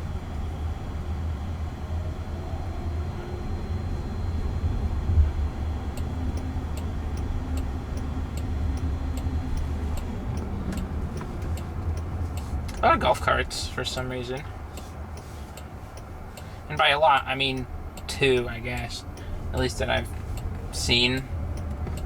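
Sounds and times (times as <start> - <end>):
road and tyre rumble in car: 0.0 - 22.0
turn-signal clicks: 5.6 - 22.0.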